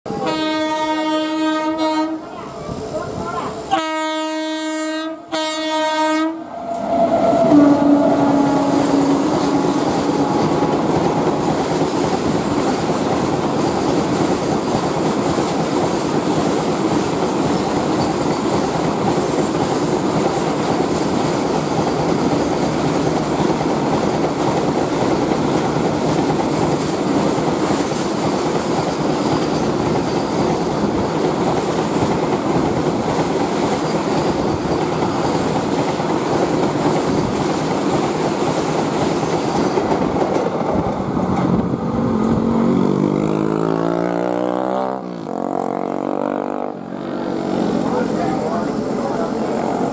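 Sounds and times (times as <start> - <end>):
locomotive horn blasts: 0.1 - 2.2, 3.7 - 11.0.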